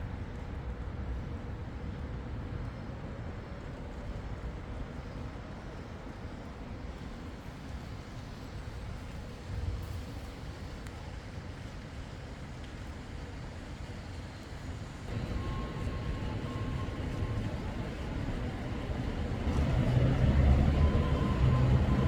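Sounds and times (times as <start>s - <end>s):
city traffic passing: 15.1s - 22.0s.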